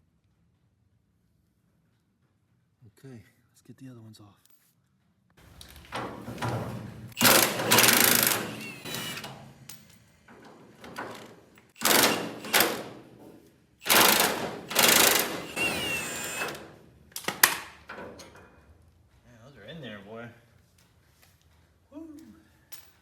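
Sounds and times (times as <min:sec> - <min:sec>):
impact wrench hammering: 0:05.6 - 0:18.0.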